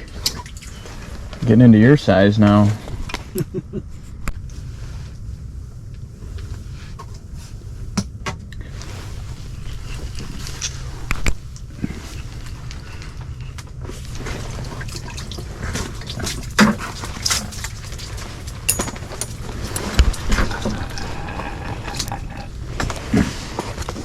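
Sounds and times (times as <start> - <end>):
steady low rumble: 0.0 - 24.0
water splashing and dripping: 14.2 - 21.2.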